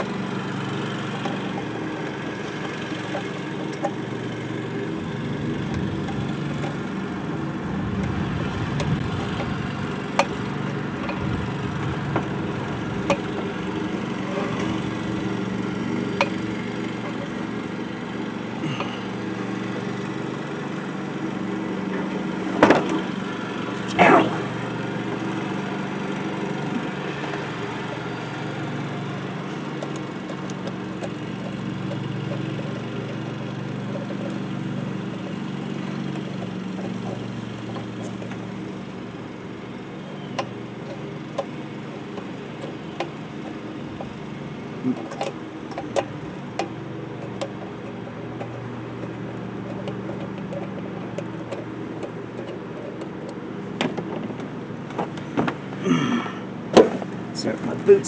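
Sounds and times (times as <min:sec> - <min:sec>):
lawn mower engine running: 0:00.0 - 0:58.0
sharp clicks and knocks: 0:16.0 - 0:17.3, 0:29.4 - 0:38.6, 0:40.3 - 0:55.8.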